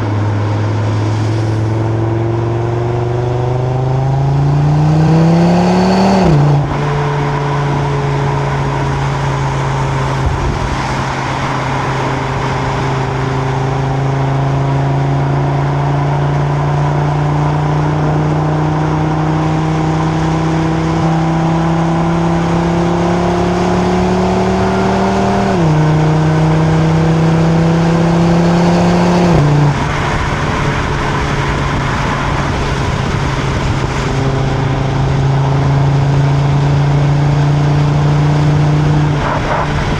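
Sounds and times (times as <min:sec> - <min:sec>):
car engine accelerating: 0:00.0 - 0:39.9
engine upshifting: 0:00.0 - 0:39.9.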